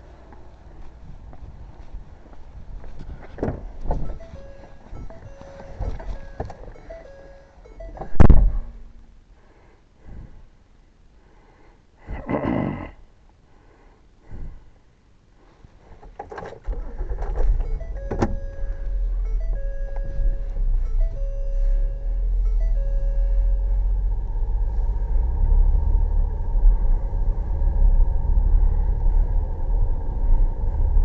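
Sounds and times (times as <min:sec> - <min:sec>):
vehicle engine rumbling: 0:00.0 - 0:11.2, 0:14.1 - 0:31.0
vehicle door shutting: 0:03.4 - 0:08.8, 0:16.2 - 0:21.4.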